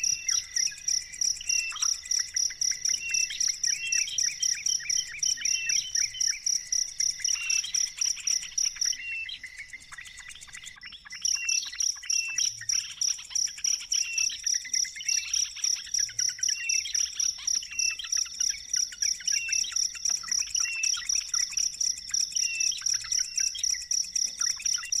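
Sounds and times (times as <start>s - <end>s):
bird chirps: 0.0s - 25.0s
insect trill: 0.0s - 25.0s.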